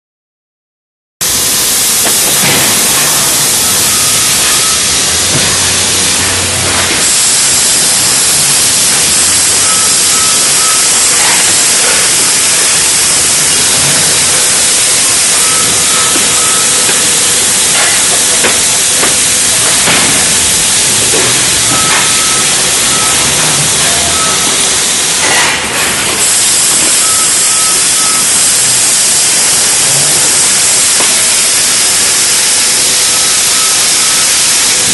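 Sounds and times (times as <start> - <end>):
conveyor line hissing: 1.2 - 34.9
high beeps: 3.2 - 5.9, 7.7 - 14.0, 15.0 - 17.3, 21.0 - 24.7, 26.8 - 28.7, 33.2 - 34.3.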